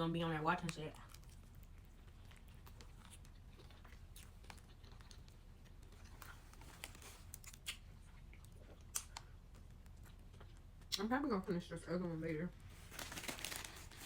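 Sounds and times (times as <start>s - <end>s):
low room hum: 0.0s - 14.0s
faint chewing: 0.5s - 11.0s
mouth clicks and crunches: 0.6s - 11.0s.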